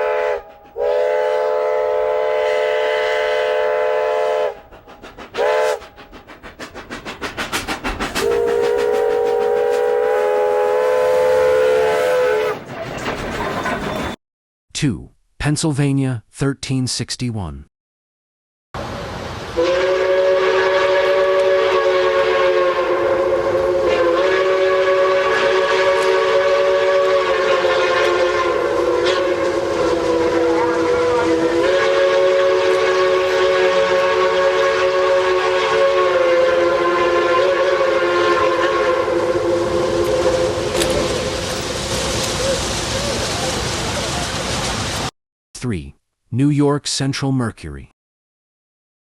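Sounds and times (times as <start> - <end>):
steam locomotive whistle chord: 0.0 - 4.7, 5.4 - 5.8, 8.2 - 12.6, 19.6 - 41.4
hiss of steam: 39.8 - 45.1.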